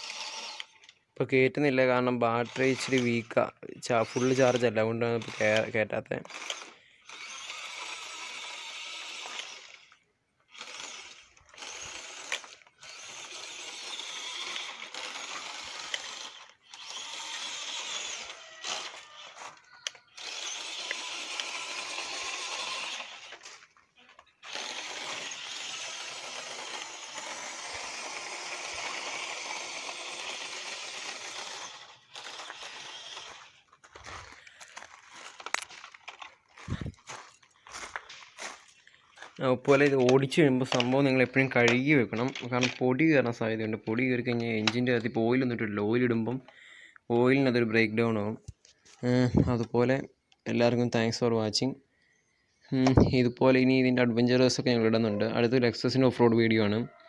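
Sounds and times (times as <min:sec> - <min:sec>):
rc truck motor whirring: 0:00.0 - 0:01.0, 0:02.3 - 0:34.0, 0:35.0 - 0:37.0.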